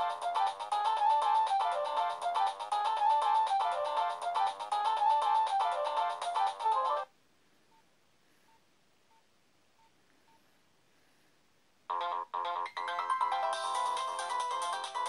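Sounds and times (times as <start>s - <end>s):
polyphonic ringtone melody: 0.0s - 7.1s, 11.9s - 15.0s.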